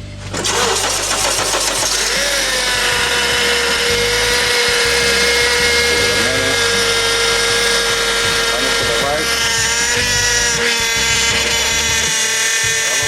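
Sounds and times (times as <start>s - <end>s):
car engine starting and running: 0.0s - 13.0s
power steering pump whine: 0.0s - 13.0s.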